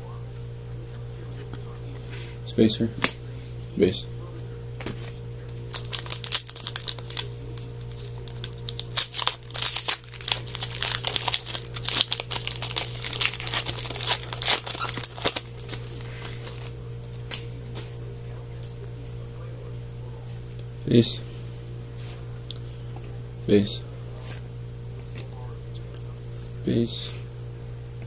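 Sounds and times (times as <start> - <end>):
steady low hum: 0.0 - 28.0
foil wrapper crinkling and tearing: 5.6 - 16.8.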